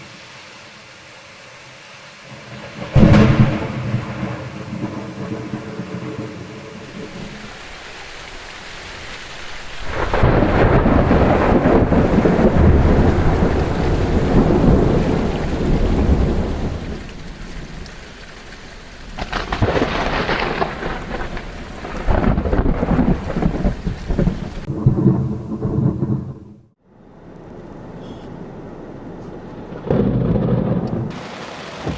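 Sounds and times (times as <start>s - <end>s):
rain hissing: 0.0s - 26.8s, 27.6s - 31.9s
thunder clap and rumble: 2.3s - 7.6s, 9.5s - 18.1s, 18.9s - 26.8s, 29.7s - 31.9s.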